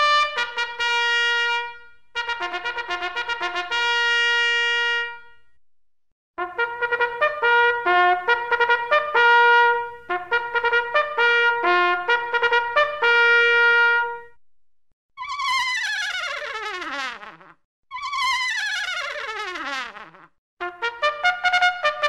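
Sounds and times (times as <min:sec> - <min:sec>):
solo trumpet playing: 0:00.0 - 0:05.5, 0:06.4 - 0:14.4, 0:19.8 - 0:22.0.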